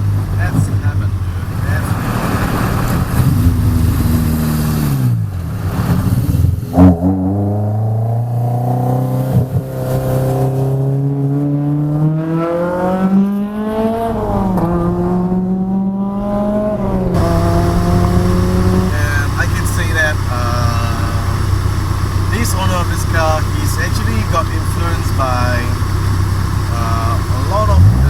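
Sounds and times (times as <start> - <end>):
car engine revving: 0.0 - 28.0.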